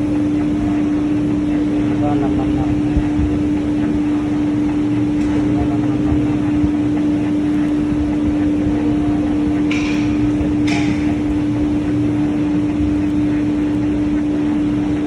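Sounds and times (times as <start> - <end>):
machine humming: 0.0 - 15.0.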